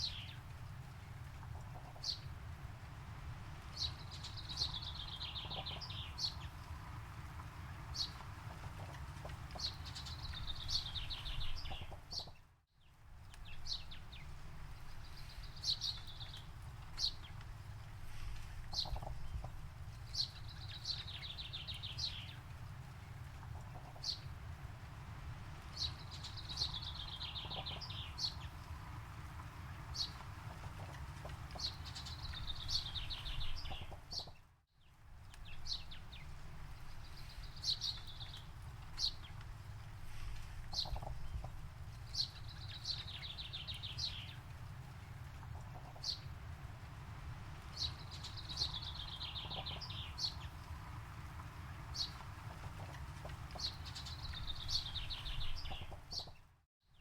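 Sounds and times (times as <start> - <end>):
songbird singing: 0.0 - 57.0
steady low rumble: 35.1 - 56.1.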